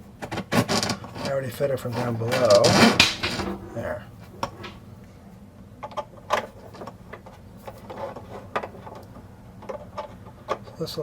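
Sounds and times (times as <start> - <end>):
low steady hum: 0.0 - 11.0.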